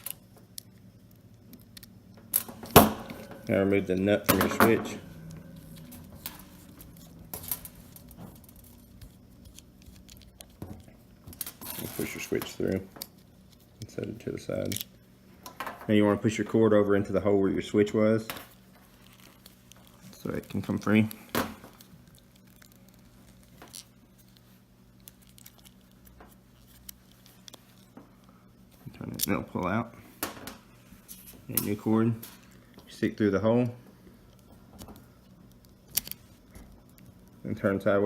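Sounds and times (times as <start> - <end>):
low steady hum: 0.0 - 38.0.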